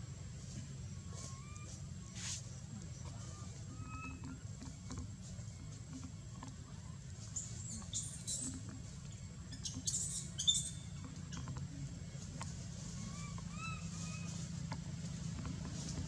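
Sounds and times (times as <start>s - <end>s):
baby monkey squeaking: 9.5s - 11.4s.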